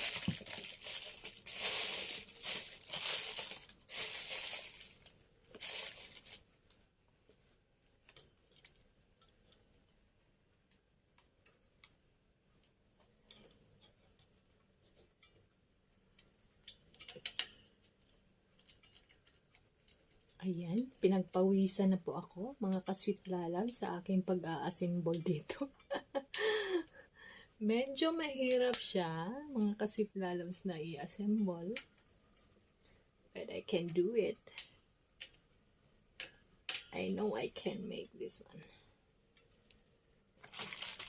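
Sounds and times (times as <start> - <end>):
plastic packaging crinkling: 0.0 - 6.8, 40.4 - 41.0.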